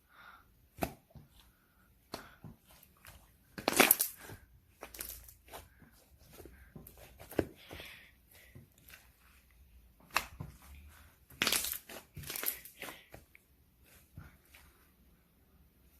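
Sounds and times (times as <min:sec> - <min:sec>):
slime crackling and popping: 0:03.5 - 0:05.5, 0:11.3 - 0:12.9.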